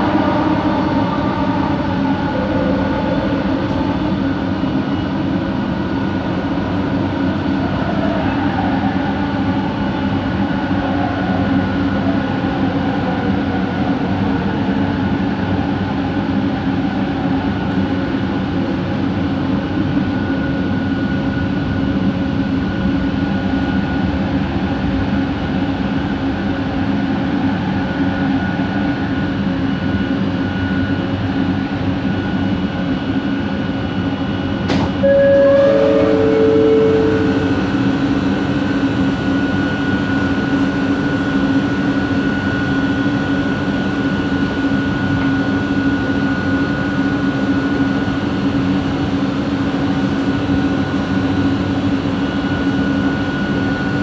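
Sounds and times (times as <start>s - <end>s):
train rumble: 0.0s - 20.1s, 34.6s - 45.4s
two-note falling tone: 35.0s - 39.5s
high motor whine: 35.0s - 42.4s.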